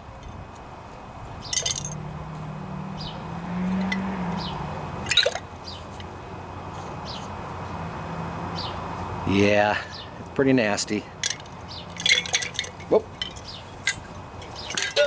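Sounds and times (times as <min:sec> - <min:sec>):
metal parts clinking in glass jar: 0:01.5 - 0:02.0, 0:05.1 - 0:05.4, 0:11.2 - 0:15.0.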